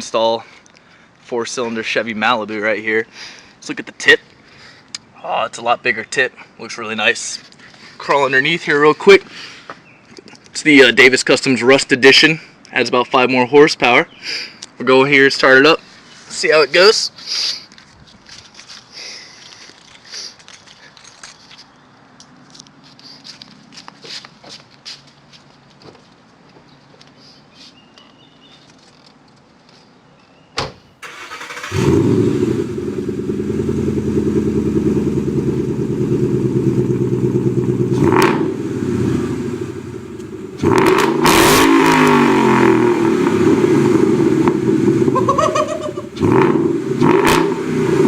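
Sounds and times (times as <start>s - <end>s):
car engine idling and revving: 31.4s - 45.3s, 46.1s - 48.0s.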